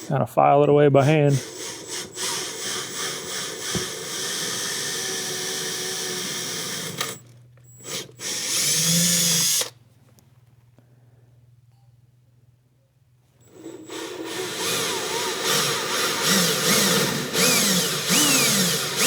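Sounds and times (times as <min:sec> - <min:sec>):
power drill boring holes: 0:00.0 - 0:00.2, 0:01.0 - 0:09.7, 0:13.5 - 0:19.0.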